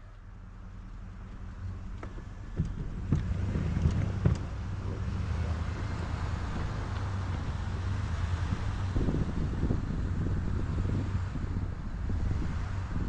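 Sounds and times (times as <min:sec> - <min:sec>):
snow-clearing vehicle engine running: 0:00.0 - 0:13.0
sharp knocks: 0:02.0 - 0:04.6.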